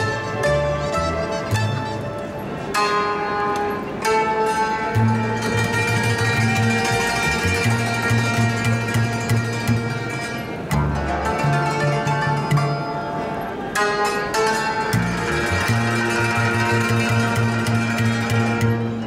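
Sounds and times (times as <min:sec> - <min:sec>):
plucked string instrument: 0:00.0 - 0:19.0
low bass line: 0:04.9 - 0:12.9, 0:14.9 - 0:19.0.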